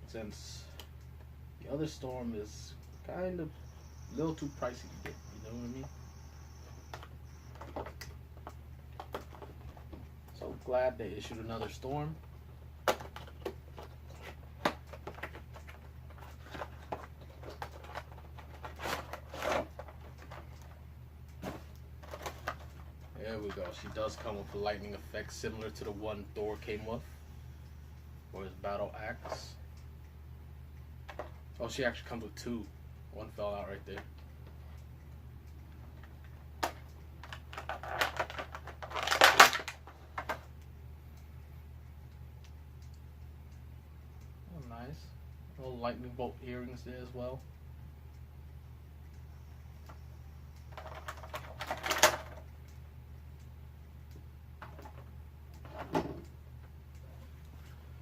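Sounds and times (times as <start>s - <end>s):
steady low hum: 0.0s - 58.0s
plastic packaging clicks and rustles: 21.4s - 24.4s, 36.0s - 40.5s, 50.7s - 52.4s
plastic and cardboard packaging crinkling: 37.2s - 39.9s.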